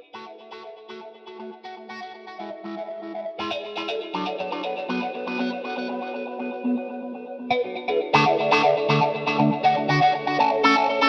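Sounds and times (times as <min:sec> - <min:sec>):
guitar with effects playing notes: 0:00.0 - 0:11.0.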